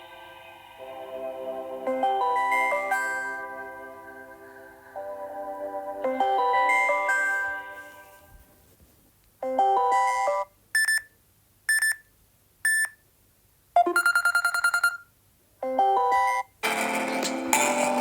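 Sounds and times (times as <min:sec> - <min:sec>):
ringtone melody: 0:00.1 - 0:08.3, 0:09.4 - 0:10.5, 0:13.8 - 0:15.0, 0:15.6 - 0:18.0
high beeps: 0:11.7 - 0:12.0, 0:13.8 - 0:16.5
fast pulsing beep: 0:13.8 - 0:15.0.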